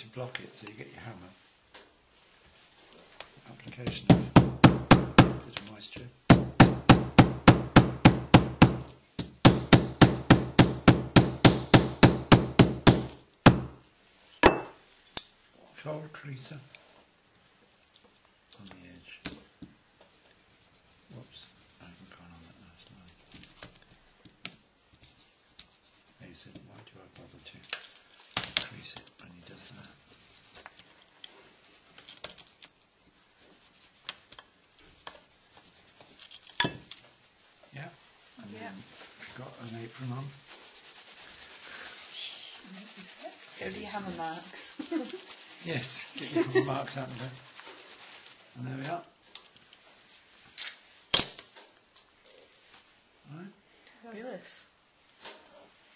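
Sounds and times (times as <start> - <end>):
hammer striking leather: 3.8 - 5.5, 6.3 - 13.8, 14.4 - 14.8
sharp knock: 3.9 - 5.5, 6.3 - 13.8.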